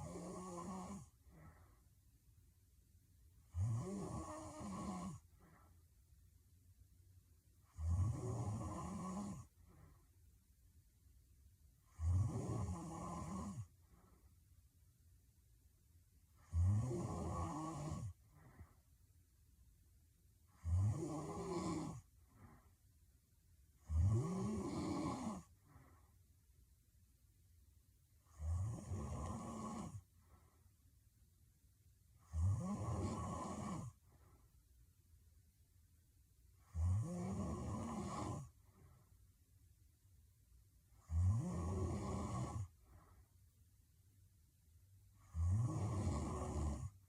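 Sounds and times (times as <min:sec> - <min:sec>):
woman snoring heavily: 0:00.0 - 0:01.6, 0:03.5 - 0:05.2, 0:07.7 - 0:09.5, 0:11.9 - 0:13.7, 0:16.4 - 0:18.2, 0:20.6 - 0:22.1, 0:23.8 - 0:25.5, 0:28.3 - 0:30.0, 0:32.3 - 0:34.0, 0:36.7 - 0:38.5, 0:41.0 - 0:42.7, 0:45.3 - 0:47.0.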